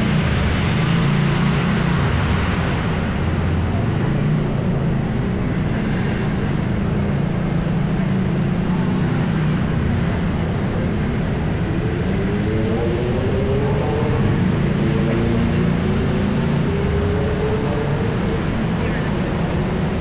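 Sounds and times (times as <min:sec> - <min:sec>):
city street traffic: 0:00.0 - 0:20.0
vehicle engine rising in pitch: 0:10.8 - 0:20.0.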